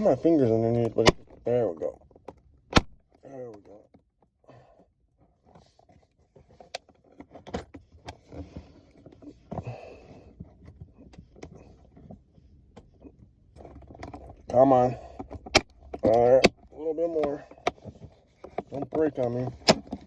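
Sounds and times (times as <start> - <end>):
plastic trim clicks and rustling: 15.2 - 20.0.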